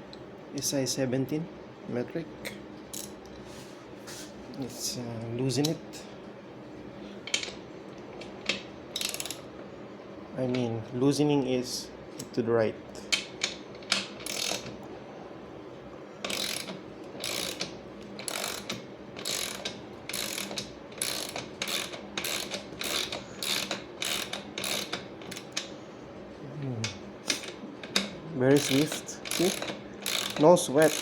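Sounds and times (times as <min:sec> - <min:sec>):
hand ratchet clicking: 0:09.0 - 0:09.4, 0:13.2 - 0:14.7, 0:16.2 - 0:25.7, 0:27.3 - 0:31.0.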